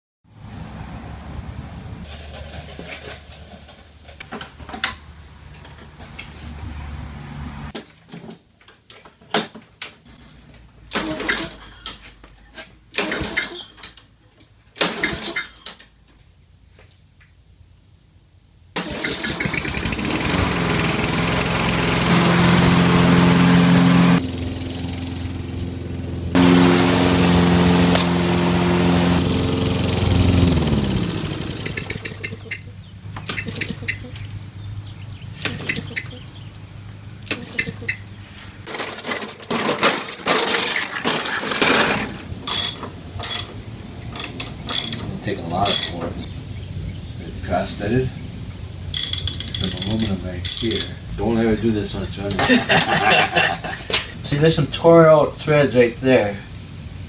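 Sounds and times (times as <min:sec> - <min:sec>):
lawnmower engine running: 0:18.8 - 0:54.8
ratchet wrench clicking: 0:42.5 - 0:43.5, 0:44.1 - 0:46.0, 0:48.9 - 0:51.0.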